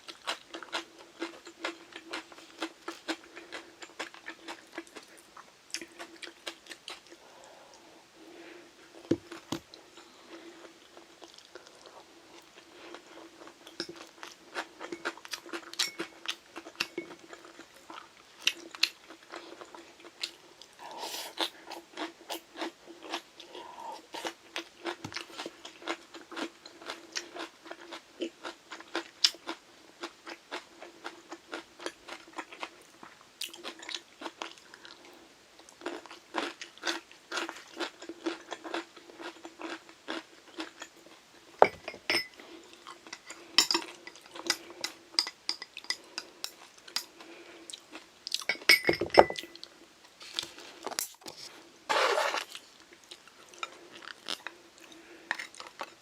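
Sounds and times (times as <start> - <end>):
crunchy chewing: 0.0 - 7.5, 35.7 - 41.1
faint steady hum: 0.0 - 56.0.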